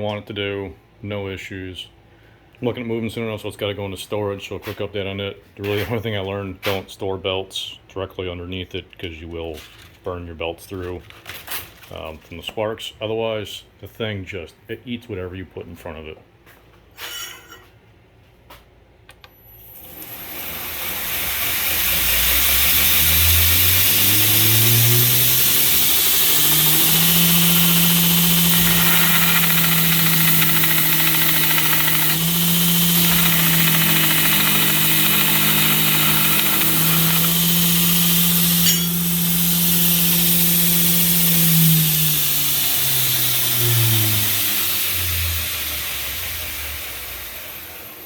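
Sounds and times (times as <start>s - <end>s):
electric grinder motor humming: 19.9s - 48.0s.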